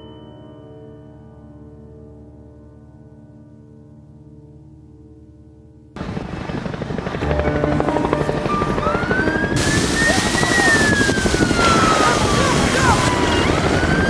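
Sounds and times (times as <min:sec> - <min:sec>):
helicopter rotor chopping: 0:06.0 - 0:14.0.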